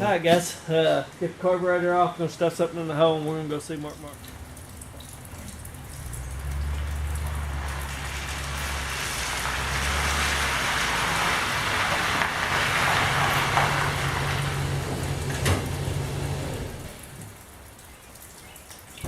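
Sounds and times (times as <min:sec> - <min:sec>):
road noise rushing: 0:03.6 - 0:17.7
car engine hum: 0:04.3 - 0:17.3.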